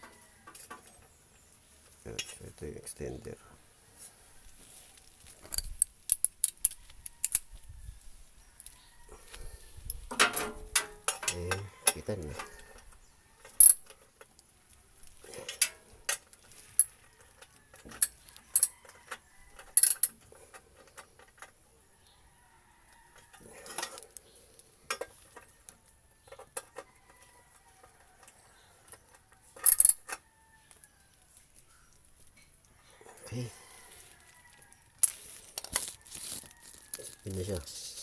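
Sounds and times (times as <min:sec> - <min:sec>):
wrench clinking against metal: 0:19.6 - 0:20.2.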